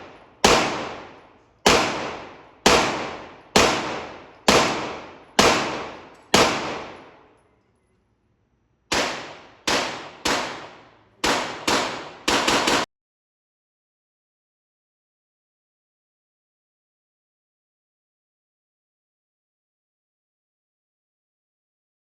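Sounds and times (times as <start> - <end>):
handgun shots echoing: 0.0 - 7.4, 8.9 - 12.9.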